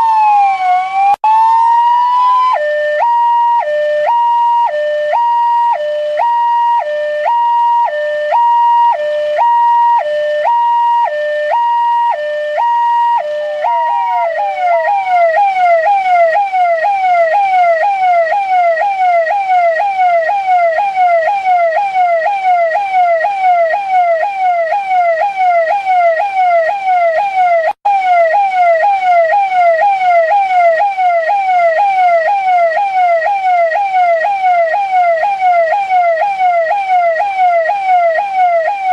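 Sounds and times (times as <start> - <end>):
police siren: 0.0 - 38.9.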